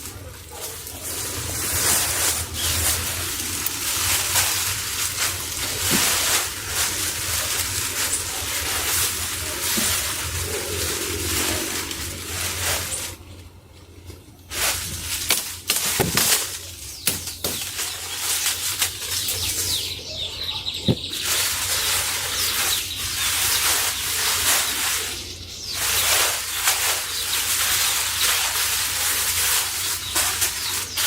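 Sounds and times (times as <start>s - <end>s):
dry leaves rustling and crackling: 0.0s - 31.0s
twigs snapping: 0.6s - 13.5s, 14.7s - 19.9s.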